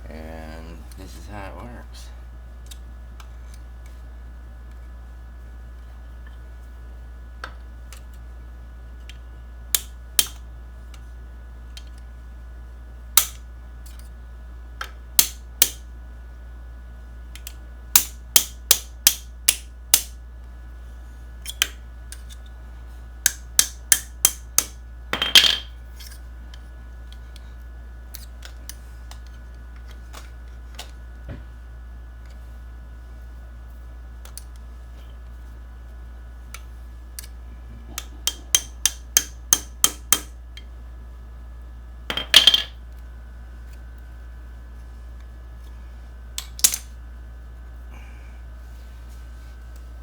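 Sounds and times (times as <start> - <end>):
sharp metallic taps and clicks: 38.0 - 40.3.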